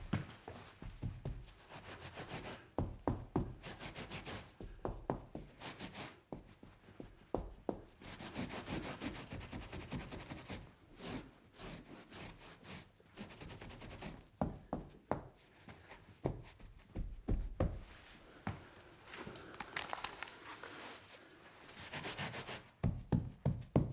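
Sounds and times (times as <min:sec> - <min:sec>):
rubbing and scrubbing strokes: 0:17.9 - 0:22.7.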